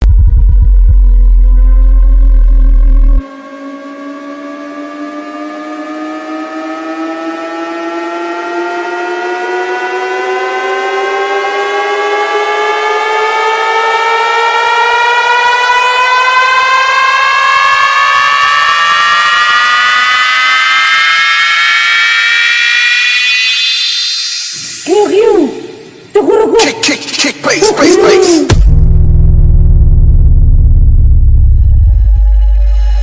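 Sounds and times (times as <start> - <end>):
siren winding up in pitch: 0.4 - 26.1.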